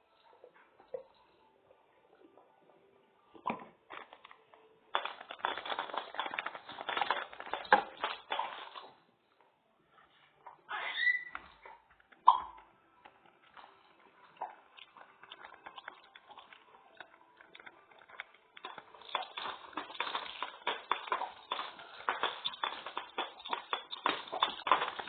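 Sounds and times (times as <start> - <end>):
utensil stirring sticky mixture: 14.4 - 25.0.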